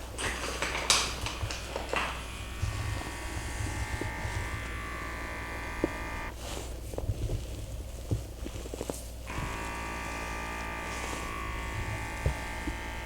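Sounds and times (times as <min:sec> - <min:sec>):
handling clicks and rustles: 0:00.0 - 0:13.0
small electric motor buzzing: 0:02.1 - 0:06.4, 0:09.2 - 0:13.0.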